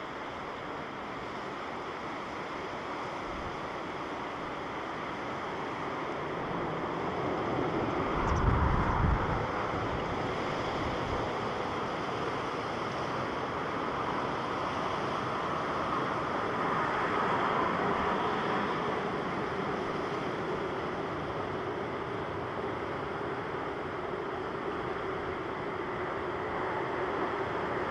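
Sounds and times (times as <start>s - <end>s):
jet engine rush: 4.2s - 14.6s
wind buffeting microphone: 7.9s - 11.3s.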